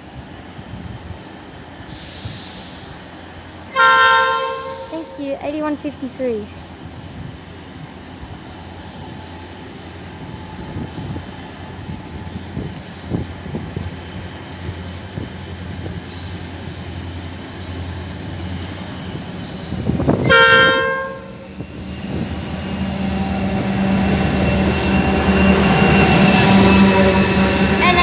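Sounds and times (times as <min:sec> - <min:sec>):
train rumbling on rails: 0:00.0 - 0:28.0
train horn: 0:03.7 - 0:05.2, 0:20.2 - 0:21.4.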